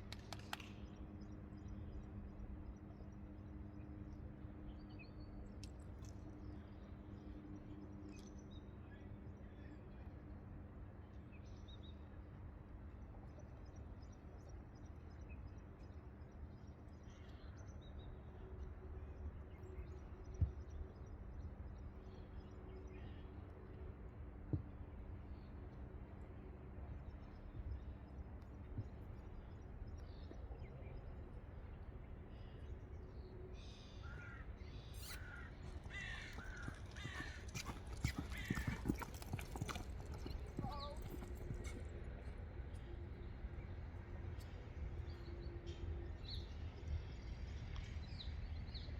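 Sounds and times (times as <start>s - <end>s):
small birds chirping: 32.4s - 41.9s
crow cawing: 35.2s - 37.4s
horse hooves knocking: 35.6s - 41.9s.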